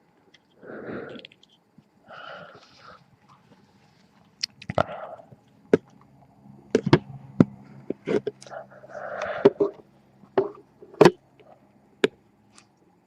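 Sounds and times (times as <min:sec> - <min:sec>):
breathy exhalations: 0:00.6 - 0:01.4, 0:02.0 - 0:04.1, 0:04.7 - 0:05.5, 0:08.0 - 0:09.8.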